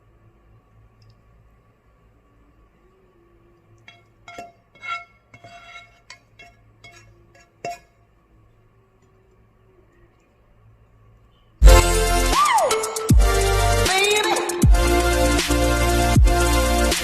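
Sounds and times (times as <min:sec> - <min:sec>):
dishes clinking together: 0:03.8 - 0:08.0.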